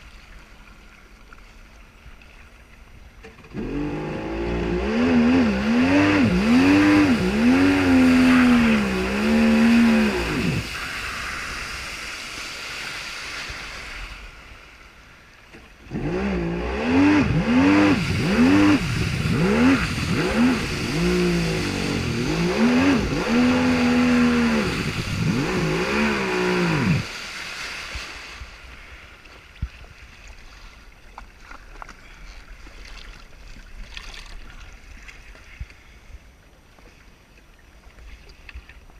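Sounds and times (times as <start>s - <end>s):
jet ski engine revving in blips: 3.2s - 11.1s, 15.8s - 27.2s
low wash of noise: 3.7s - 15.2s, 15.9s - 28.6s.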